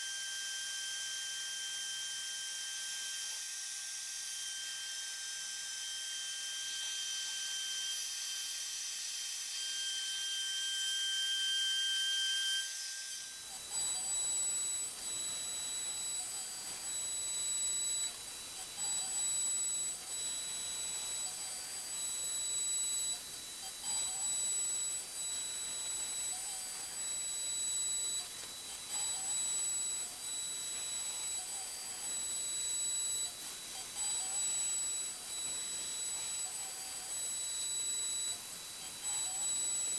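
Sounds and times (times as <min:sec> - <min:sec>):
router spindle whining: 0:04.0 - 0:31.9.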